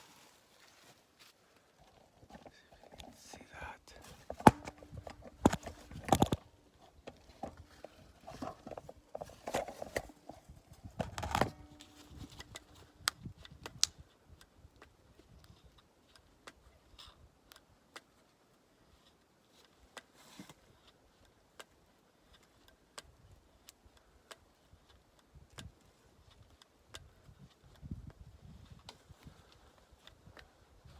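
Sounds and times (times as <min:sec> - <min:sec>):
grease gun clicks and knocks: 0:04.2 - 0:06.4.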